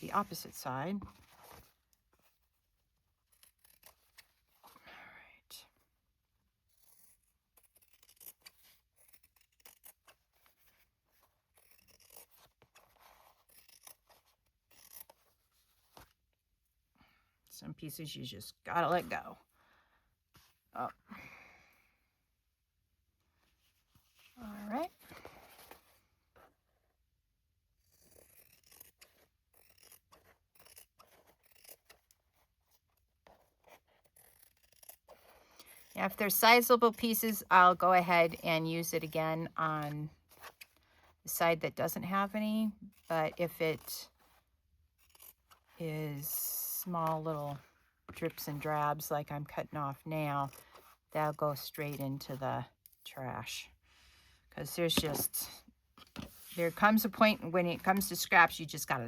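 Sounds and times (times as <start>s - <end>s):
scissors snipping fabric: 6.8s - 10.8s, 11.4s - 15.2s, 27.8s - 39.1s, 44.9s - 45.8s.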